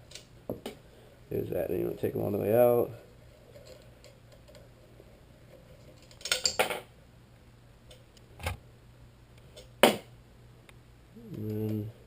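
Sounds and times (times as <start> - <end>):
small metal parts clinking: 5.9 - 6.8.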